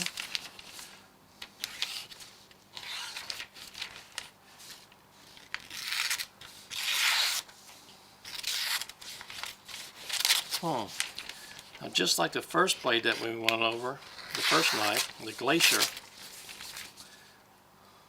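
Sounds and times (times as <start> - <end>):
knife blade slicing paper: 5.7 - 7.5, 14.2 - 16.0.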